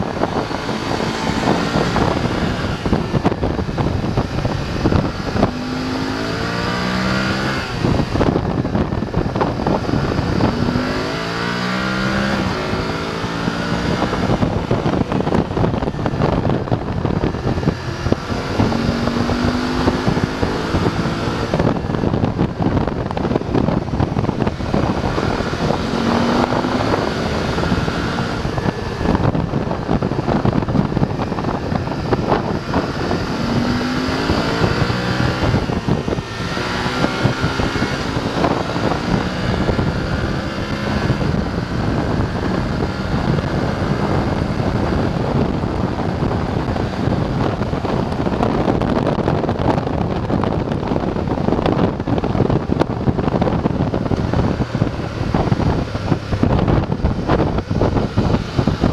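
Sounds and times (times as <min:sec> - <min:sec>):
motorcycle engine accelerating: 0:00.0 - 0:58.9
wind noise on microphone: 0:00.0 - 0:58.9.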